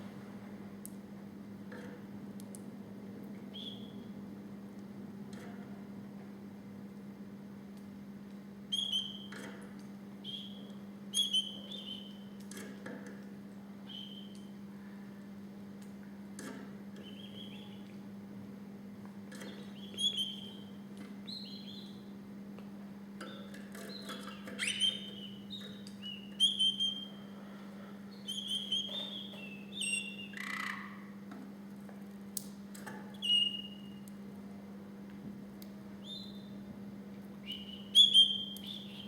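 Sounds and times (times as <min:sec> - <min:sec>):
canary singing: 0:08.7 - 0:09.3, 0:10.2 - 0:12.3, 0:13.8 - 0:14.4, 0:17.0 - 0:17.8, 0:19.5 - 0:22.1, 0:23.9 - 0:27.3, 0:28.1 - 0:31.1, 0:33.2 - 0:34.0, 0:36.0 - 0:36.6, 0:37.4 - 0:39.0.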